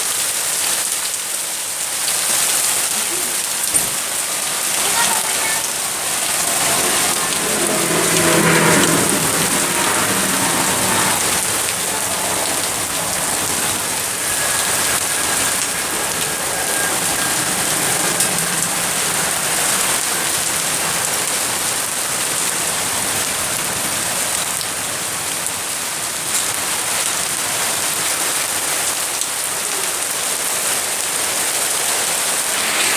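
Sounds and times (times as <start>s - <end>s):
hail and rain pelting down: 0.0s - 32.9s.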